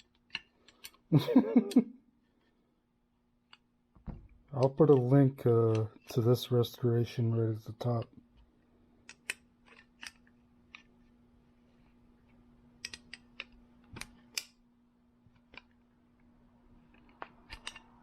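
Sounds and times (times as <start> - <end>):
faint steady hum: 0.0 - 18.0
metal clicks of hand tools: 17.0 - 18.0.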